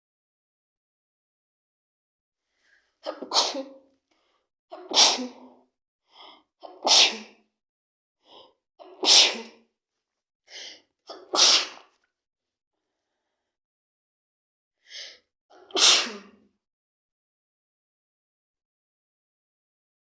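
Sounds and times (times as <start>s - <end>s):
person sneezing: 3.0s - 3.8s, 4.7s - 5.6s, 6.6s - 7.4s, 8.8s - 9.6s, 11.1s - 11.9s, 15.5s - 16.4s.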